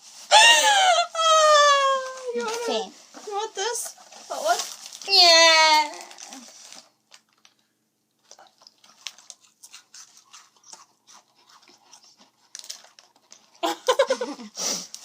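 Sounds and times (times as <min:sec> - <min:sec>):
person chewing food: 0:08.1 - 0:13.6.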